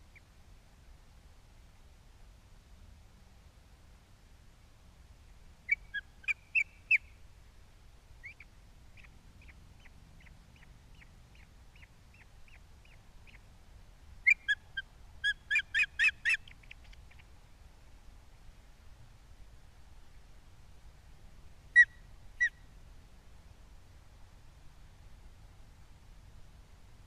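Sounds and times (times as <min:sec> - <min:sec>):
bird whistled chirps: 0:14.3 - 0:14.6.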